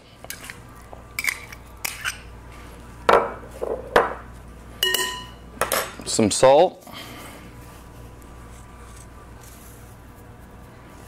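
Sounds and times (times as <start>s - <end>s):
utensils knocking against bowl: 4.8s - 5.9s.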